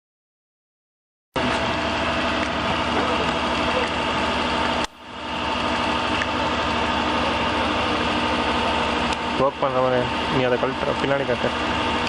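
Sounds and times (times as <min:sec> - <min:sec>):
steady mechanical hum: 0:01.4 - 0:12.0.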